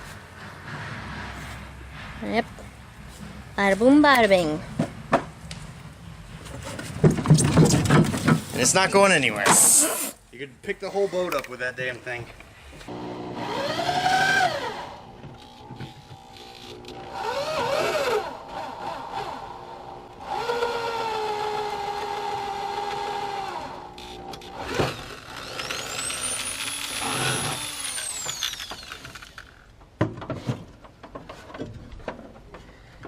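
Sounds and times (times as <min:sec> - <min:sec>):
power drill spinning: 0:12.9 - 0:29.7.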